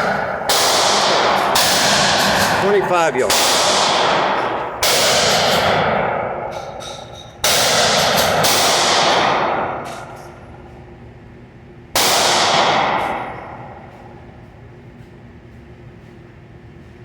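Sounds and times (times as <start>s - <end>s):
pistol shots: 0.0s - 6.4s, 7.4s - 10.0s, 12.0s - 13.6s
ringing gunshot echo: 0.0s - 6.4s.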